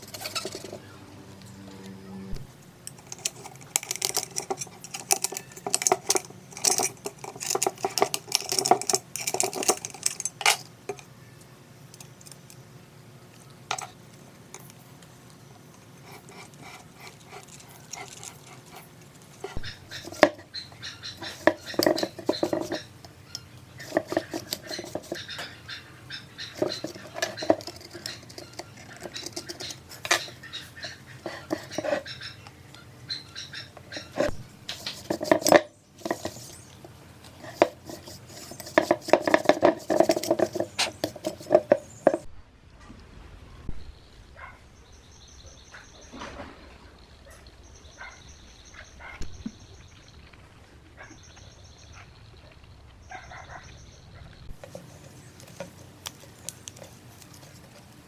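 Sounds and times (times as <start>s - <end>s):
tools clinking and clattering: 0.0s - 0.9s, 2.8s - 11.2s, 11.9s - 12.6s, 13.7s - 14.8s, 15.7s - 25.6s, 26.4s - 32.5s, 33.7s - 42.3s, 54.5s - 58.0s.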